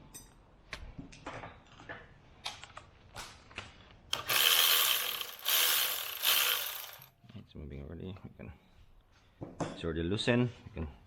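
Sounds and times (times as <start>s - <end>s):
ratchet wrench clicking: 4.1s - 7.1s.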